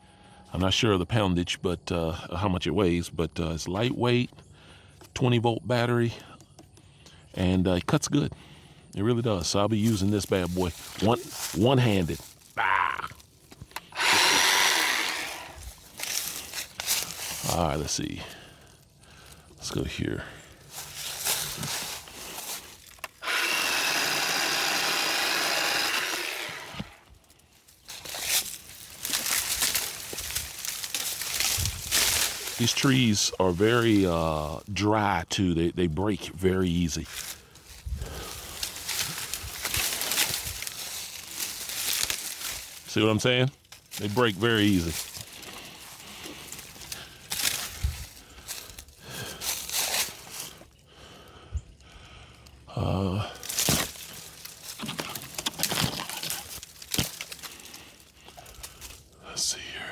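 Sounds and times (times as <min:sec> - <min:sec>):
dry branches snapping and rustling: 0:09.5 - 0:34.8, 0:36.7 - 0:50.8, 0:53.4 - 0:59.2
electric chainsaw whine: 0:13.6 - 0:17.3, 0:20.8 - 0:34.6, 0:37.1 - 0:43.0.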